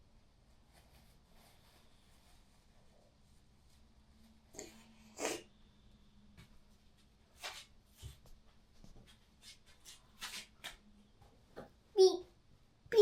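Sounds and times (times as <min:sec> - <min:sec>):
faint steady hum: 0:00.0 - 0:09.0.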